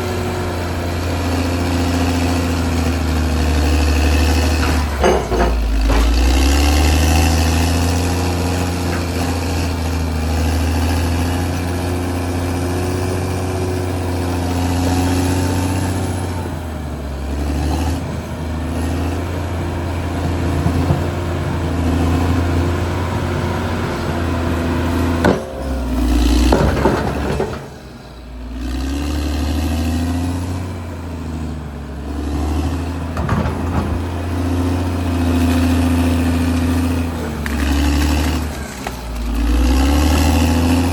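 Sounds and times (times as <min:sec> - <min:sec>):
bulldozer diesel engine running: 0:00.0 - 0:40.9
sharp knocks: 0:25.2 - 0:27.7.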